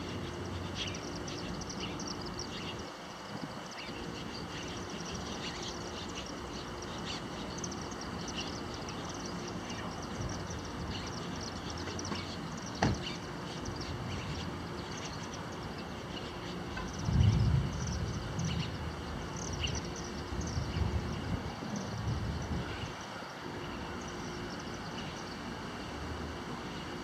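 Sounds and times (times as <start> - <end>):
birds chirping: 0.0 - 27.0
high insect drone: 0.0 - 27.0
low rumble: 17.0 - 22.9.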